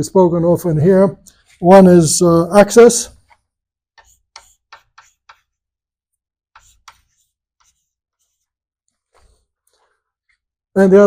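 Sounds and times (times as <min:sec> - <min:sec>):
faint ticking strokes of writing: 0:03.1 - 0:10.6.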